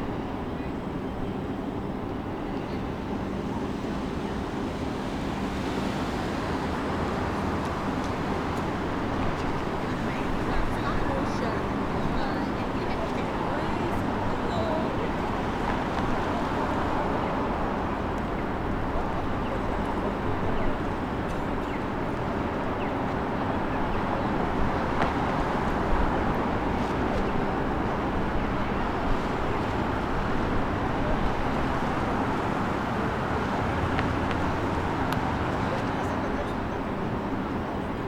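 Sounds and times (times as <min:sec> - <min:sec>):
rumble and hiss of station: 0:00.0 - 0:38.0.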